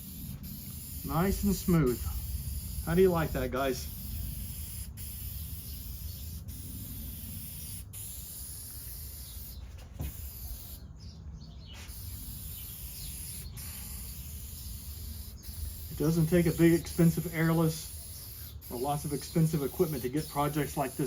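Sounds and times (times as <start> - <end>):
aerosol can spraying hiss: 0.0 - 10.8, 11.8 - 21.0.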